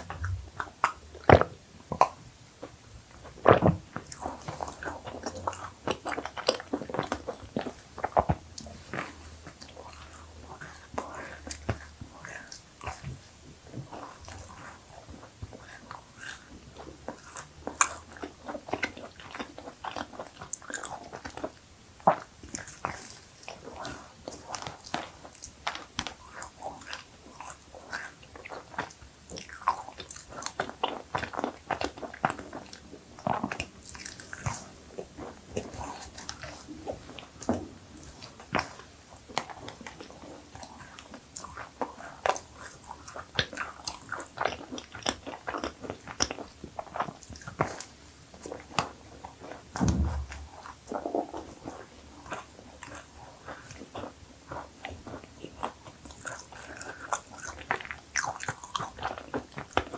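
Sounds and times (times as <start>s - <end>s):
cookies being crunched and chewed: 13.7s - 49.6s, 50.6s - 59.9s
low thump: 49.8s - 50.7s.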